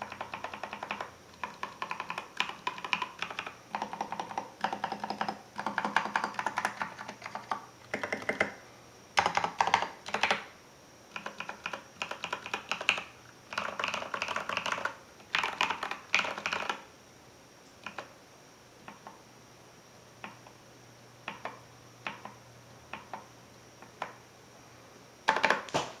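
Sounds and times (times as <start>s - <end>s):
mechanical keyboard typing: 0.0s - 8.6s, 9.2s - 10.5s, 11.1s - 16.8s, 17.8s - 18.1s, 21.3s - 23.2s, 25.3s - 25.7s.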